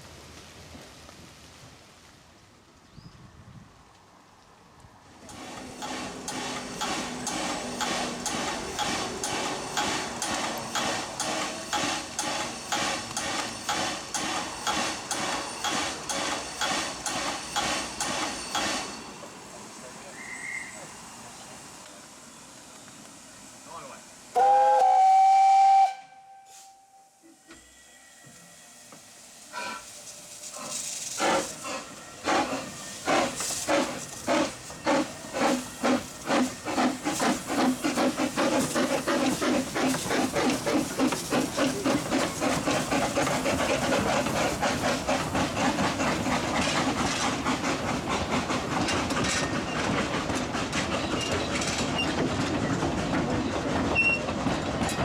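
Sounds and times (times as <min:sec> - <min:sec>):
steam locomotive chuffing: 0:05.2 - 0:55.0
steam locomotive whistle: 0:20.1 - 0:21.3, 0:24.3 - 0:28.5.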